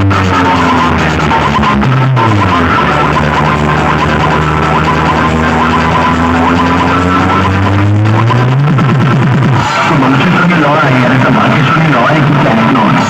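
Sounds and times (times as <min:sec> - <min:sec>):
siren-like high tone: 0:00.0 - 0:08.3
loud electronic music: 0:00.0 - 0:13.0.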